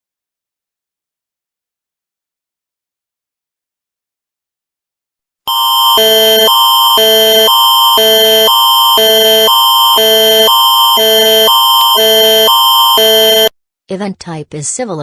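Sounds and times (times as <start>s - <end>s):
alternating electronic alert chords: 5.5s - 13.5s
steady high tone: 5.5s - 13.5s.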